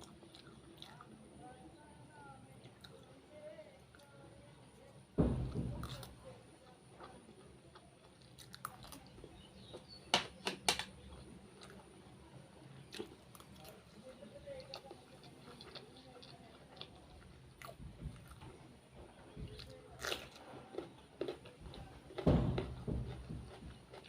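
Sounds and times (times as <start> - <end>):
person chewing: 7.0 - 9.9, 12.8 - 18.7, 19.5 - 24.0.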